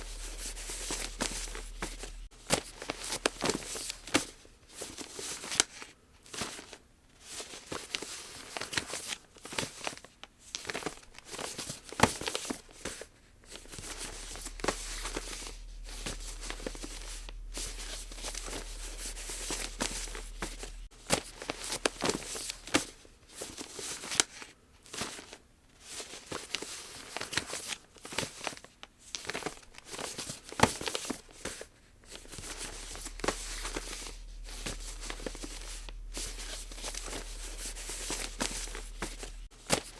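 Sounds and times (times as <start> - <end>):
paper crinkling and rustling: 13.8 - 39.9.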